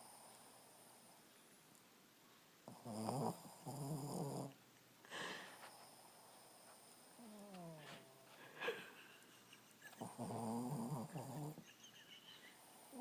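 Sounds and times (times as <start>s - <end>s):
pet snoring: 2.7s - 4.6s, 5.6s - 8.2s, 9.9s - 11.6s.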